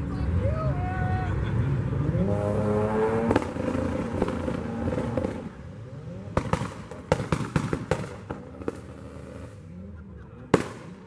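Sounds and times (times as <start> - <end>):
car engine revving: 0.0 - 11.0
exhaust pops and crackles: 3.2 - 5.6, 6.3 - 9.6, 10.5 - 11.0.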